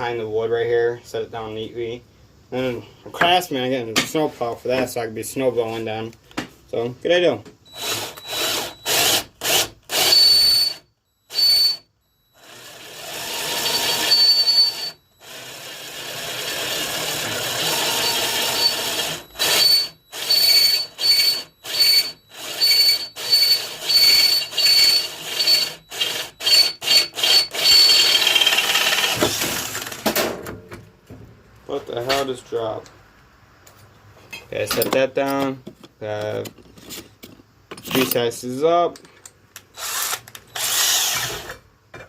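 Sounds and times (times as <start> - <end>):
electric drill boring into metal: 7.7 - 29.6, 39.8 - 41.6.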